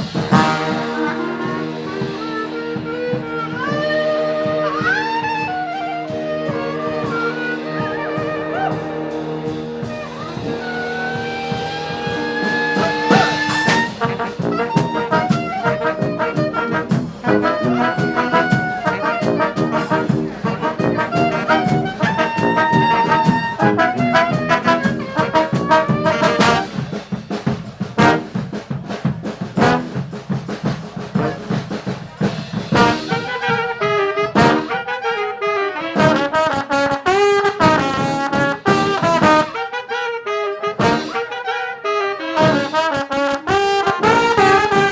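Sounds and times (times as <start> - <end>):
brass band with drums: 0.0 - 44.9
cymbal crash: 7.4 - 14.2.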